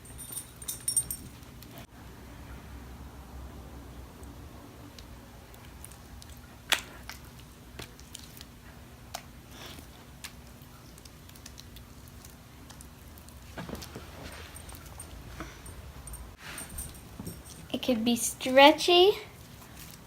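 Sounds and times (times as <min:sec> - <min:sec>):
slime squelching: 0:05.0 - 0:15.4.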